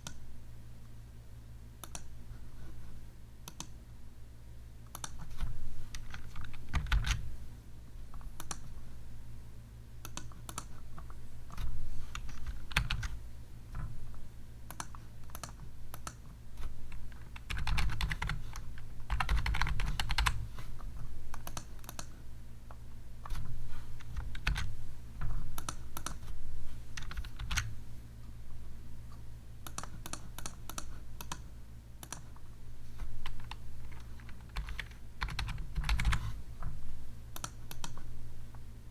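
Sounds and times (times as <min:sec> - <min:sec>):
typing on computer keyboard: 0:05.9 - 0:07.2, 0:11.5 - 0:13.2, 0:16.9 - 0:20.4, 0:24.0 - 0:24.7, 0:27.0 - 0:27.7, 0:32.0 - 0:32.3, 0:33.2 - 0:36.2, 0:37.4 - 0:38.0.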